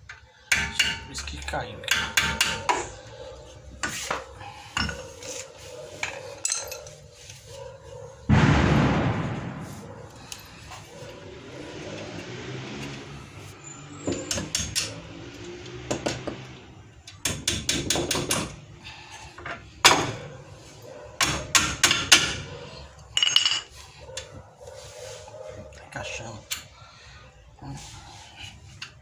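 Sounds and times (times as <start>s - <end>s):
metal brake parts clinking: 23.1s - 23.8s.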